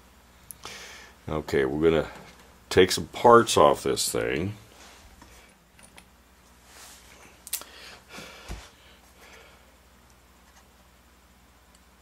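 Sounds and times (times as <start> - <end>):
soft rustles: 6.5 - 7.4.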